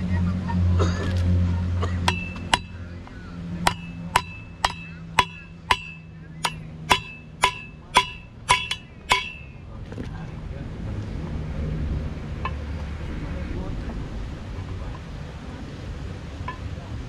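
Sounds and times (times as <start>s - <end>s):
low steady hum: 0.0s - 17.0s
hammer striking metal: 2.0s - 2.9s, 3.6s - 9.6s.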